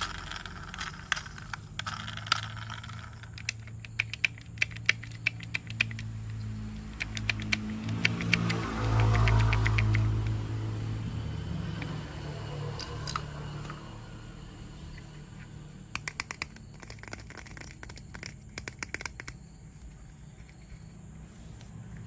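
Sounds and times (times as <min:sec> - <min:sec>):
toy train plastic clicks: 0:00.0 - 0:10.4, 0:12.8 - 0:13.8, 0:15.9 - 0:20.6
low steady hum: 0:00.0 - 0:22.0.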